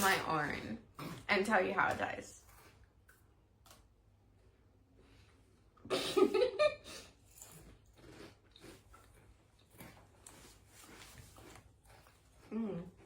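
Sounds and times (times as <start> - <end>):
person chewing candy: 7.0 - 13.0.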